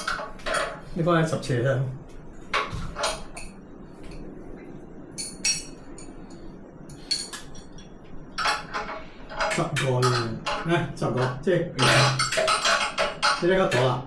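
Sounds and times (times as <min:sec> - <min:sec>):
metal tools clinking: 0:06.9 - 0:14.0.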